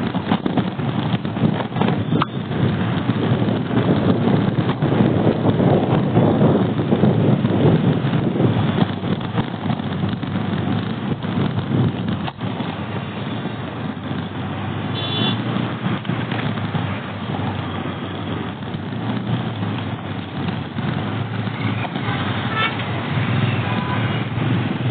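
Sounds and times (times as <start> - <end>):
road traffic rumble: 0.0 - 24.9
vehicle horn toot: 14.9 - 15.4, 21.5 - 22.8, 23.4 - 24.3.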